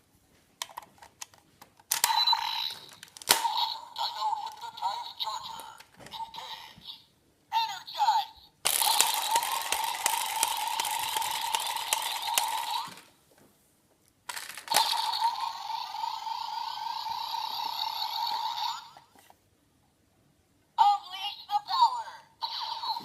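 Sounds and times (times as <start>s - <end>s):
buzzy electronic toy sound effect: 14.7s - 19.0s.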